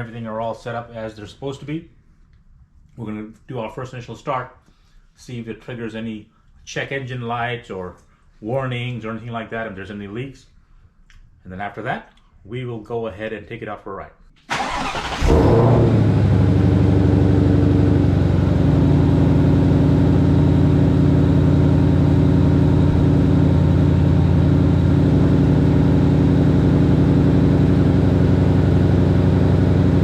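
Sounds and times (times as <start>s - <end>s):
car engine starting and idling: 14.5s - 30.0s.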